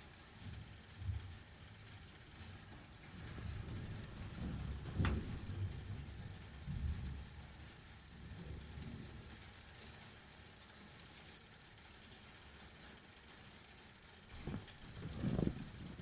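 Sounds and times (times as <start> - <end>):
rain falling: 0.0 - 16.0
thunder rumbling: 2.9 - 9.4, 14.3 - 16.0.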